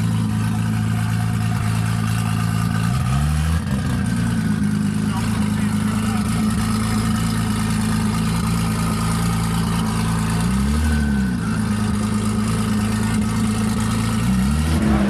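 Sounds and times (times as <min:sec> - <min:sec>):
car engine idling: 0:00.0 - 0:15.0
engine throttle blips: 0:00.0 - 0:15.0.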